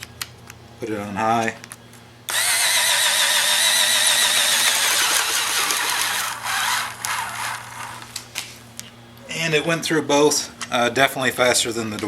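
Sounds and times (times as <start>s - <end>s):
cordless screwdriver motor whine: 2.3s - 8.2s.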